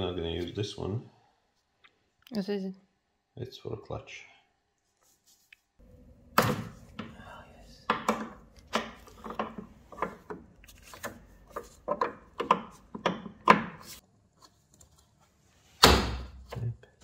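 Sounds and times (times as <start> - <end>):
knocks and clatters of car parts: 7.8 - 13.9.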